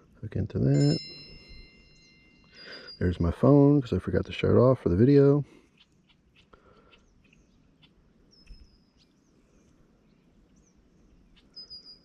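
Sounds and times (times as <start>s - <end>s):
bird's high whistled call: 11.5s - 12.0s.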